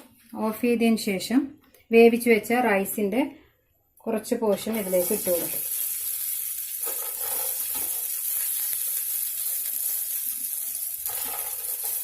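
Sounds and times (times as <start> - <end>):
ghee sizzling in a pan: 4.6 - 12.0.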